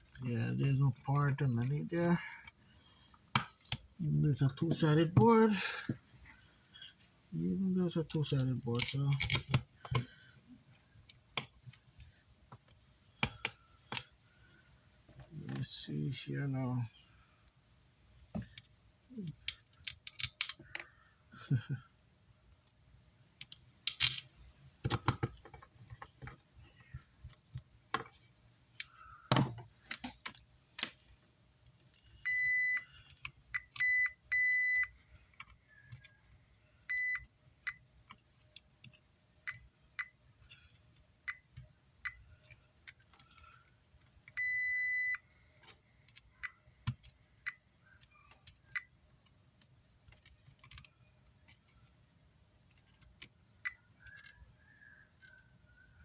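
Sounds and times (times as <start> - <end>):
multimeter beeping: 32.2 - 32.9, 33.6 - 35.0, 36.9 - 37.8, 44.4 - 45.3.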